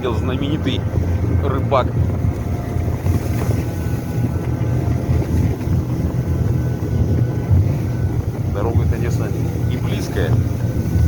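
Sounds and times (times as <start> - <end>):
snowmobile engine running: 0.0 - 11.0
wind buffeting microphone: 0.0 - 11.0.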